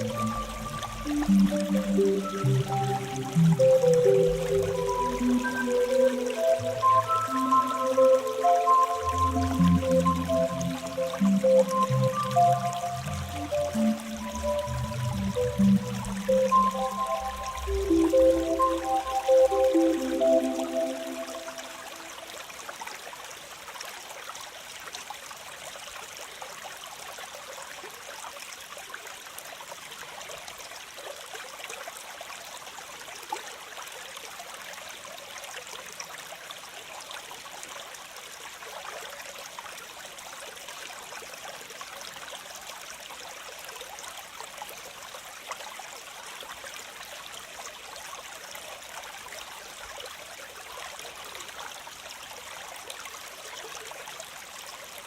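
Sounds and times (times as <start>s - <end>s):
waterfall rushing: 0.0s - 22.1s.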